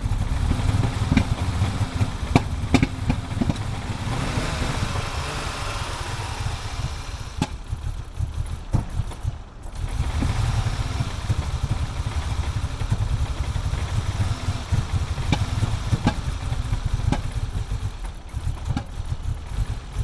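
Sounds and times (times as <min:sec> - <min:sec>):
car engine idling rough: 0:00.0 - 0:20.0
engine misfire pops: 0:00.8 - 0:10.4, 0:15.2 - 0:19.3.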